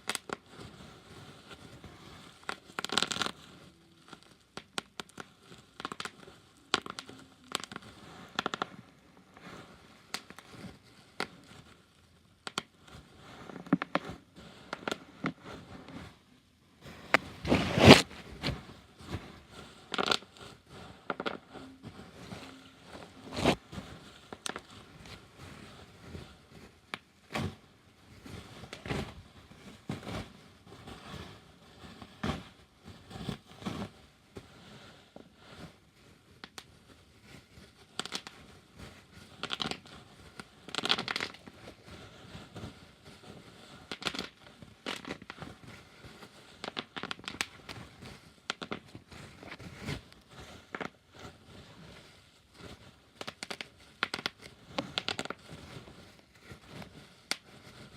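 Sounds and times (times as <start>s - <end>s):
bubble wrap popping: 0.0s - 0.8s, 2.4s - 12.9s, 13.5s - 16.0s, 17.1s - 25.2s, 26.7s - 27.7s, 28.5s - 29.2s, 36.3s - 51.6s, 52.3s - 57.9s
plastic crinkling: 1.4s - 16.2s, 17.0s - 25.4s, 36.3s - 57.9s.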